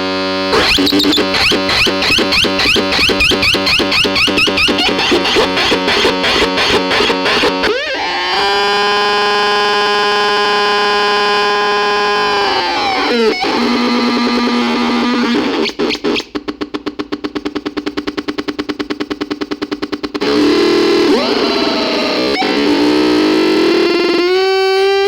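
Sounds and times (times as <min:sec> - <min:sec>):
synthesizer tones: 0:00.5 - 0:07.8.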